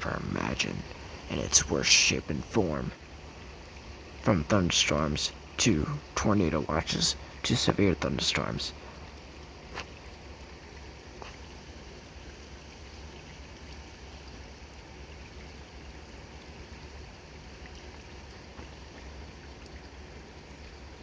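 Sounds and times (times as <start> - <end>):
pouring rain: 0.0 - 21.0
faint drip clicks: 16.3 - 19.9.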